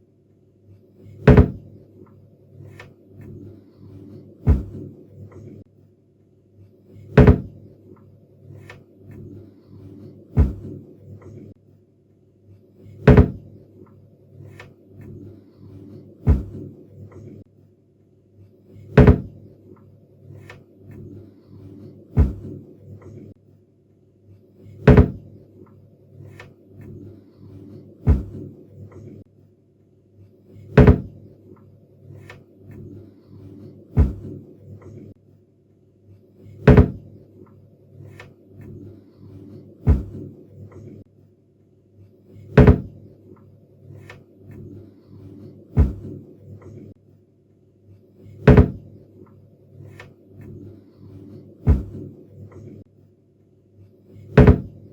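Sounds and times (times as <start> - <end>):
faint low steady background: 0.0 - 54.9
cabinet door shutting: 1.3 - 1.6, 7.2 - 7.5, 13.1 - 13.4, 19.0 - 19.3, 24.9 - 25.2, 30.8 - 31.1, 36.7 - 37.0, 42.6 - 42.9, 54.4 - 54.7.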